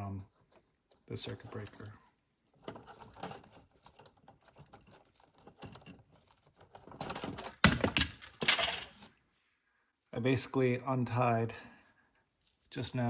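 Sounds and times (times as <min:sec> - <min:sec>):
wires clicking and scraping: 0:00.0 - 0:09.2.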